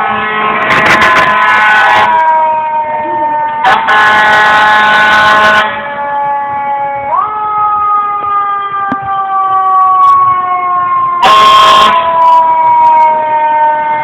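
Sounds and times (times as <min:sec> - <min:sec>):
air horn blast: 0:00.0 - 0:02.2, 0:03.6 - 0:05.9, 0:11.2 - 0:12.1
fire truck siren wailing: 0:00.0 - 0:14.0.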